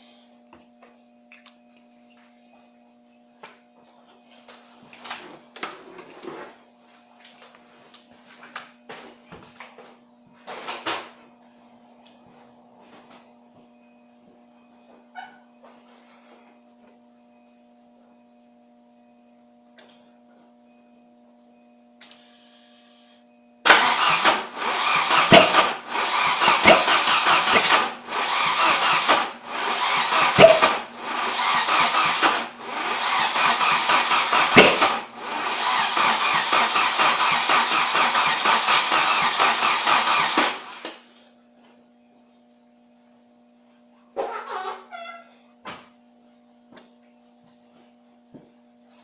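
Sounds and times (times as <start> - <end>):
car engine cranking on starter: 23.6 - 41.1.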